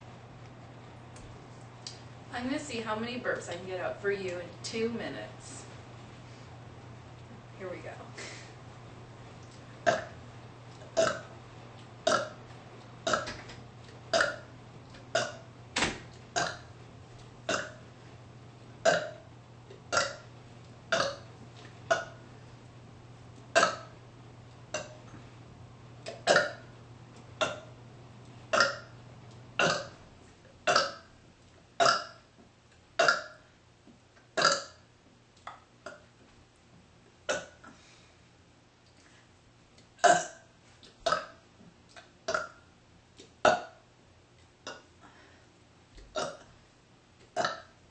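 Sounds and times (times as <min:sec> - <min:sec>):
woman burping: 0:09.8 - 0:10.2, 0:10.9 - 0:11.3, 0:12.0 - 0:12.4, 0:13.0 - 0:13.3, 0:14.1 - 0:14.4, 0:15.1 - 0:15.5, 0:16.4 - 0:16.7, 0:17.5 - 0:17.8, 0:18.8 - 0:19.2, 0:19.9 - 0:20.3, 0:20.9 - 0:21.2, 0:21.9 - 0:22.2, 0:23.5 - 0:23.9, 0:24.7 - 0:25.0, 0:26.1 - 0:26.7, 0:27.4 - 0:27.7, 0:28.5 - 0:28.9, 0:29.6 - 0:30.0, 0:30.6 - 0:31.1, 0:33.0 - 0:33.4, 0:34.4 - 0:34.8, 0:37.3 - 0:37.8, 0:40.0 - 0:41.4, 0:42.3 - 0:42.6, 0:43.4 - 0:43.8, 0:44.6 - 0:44.9, 0:46.1 - 0:46.5, 0:47.4 - 0:47.7.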